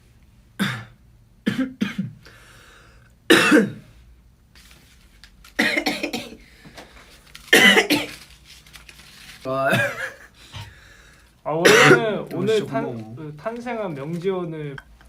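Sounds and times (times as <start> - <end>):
young man coughing: 0.6 - 2.2, 3.3 - 3.8, 5.6 - 6.4, 7.5 - 8.2, 9.6 - 10.3, 11.6 - 12.2.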